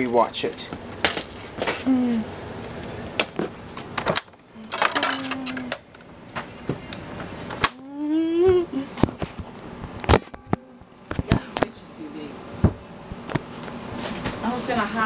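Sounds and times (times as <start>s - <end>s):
objects clicking and knocking: 3.2s - 6.5s.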